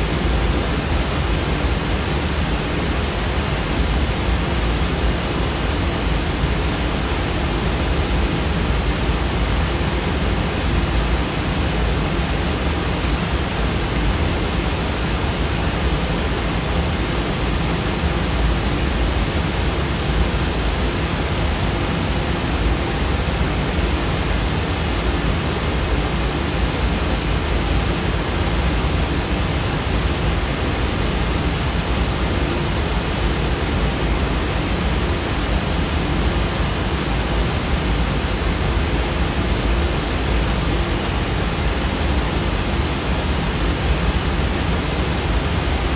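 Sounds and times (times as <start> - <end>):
steady noise hiss: 0.0 - 45.9.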